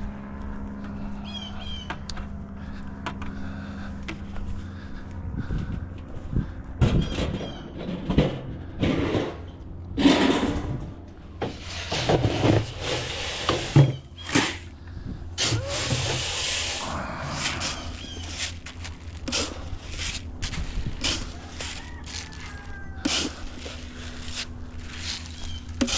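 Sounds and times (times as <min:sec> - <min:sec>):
steady low hum: 0:00.0 - 0:25.9
poultry calling: 0:01.2 - 0:02.0, 0:15.6 - 0:18.8, 0:21.0 - 0:25.9
poultry scuffling and rustling: 0:15.5 - 0:25.9.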